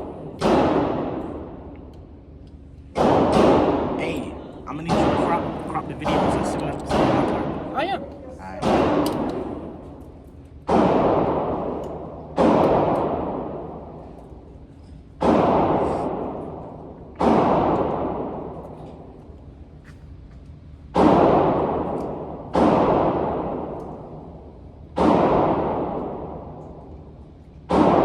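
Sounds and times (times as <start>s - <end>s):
handgun shots echoing: 3.0s - 3.9s, 6.0s - 7.6s, 21.0s - 24.0s.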